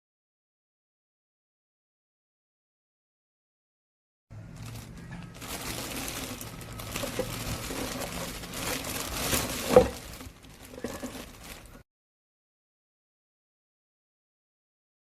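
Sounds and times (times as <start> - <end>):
rustling and crinkling handling noise: 4.4 - 11.8.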